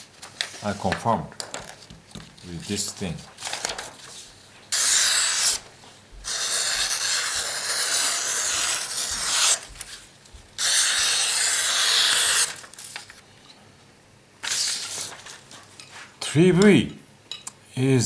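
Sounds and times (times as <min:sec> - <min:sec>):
knife blade rasping strokes: 0:06.3 - 0:09.6.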